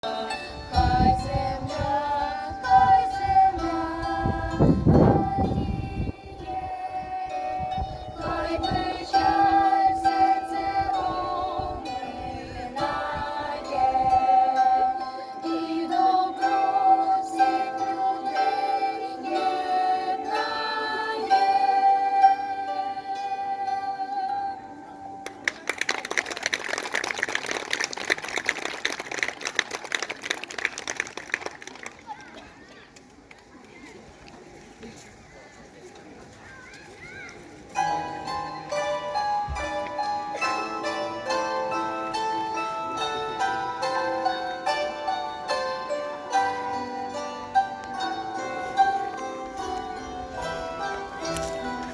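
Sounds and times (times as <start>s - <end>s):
voices singing together: 0.0s - 24.9s
audience applauding: 25.2s - 32.3s
plucked strings: 37.7s - 51.9s.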